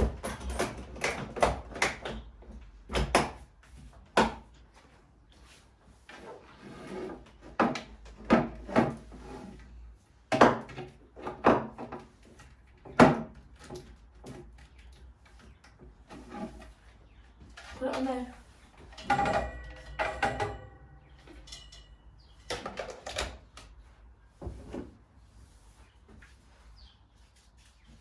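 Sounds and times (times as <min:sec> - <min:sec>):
rustling and rubbing: 0:13.8 - 0:19.1, 0:23.7 - 0:28.0
hard objects knocking and clunking: 0:18.8 - 0:23.6.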